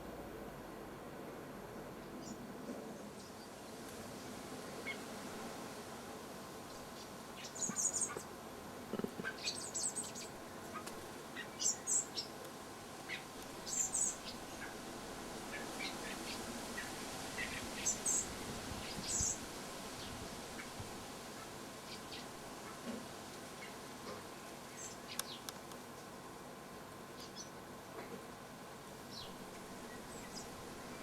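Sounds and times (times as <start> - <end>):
bird chirping: 6.7 - 8.3, 8.9 - 12.4.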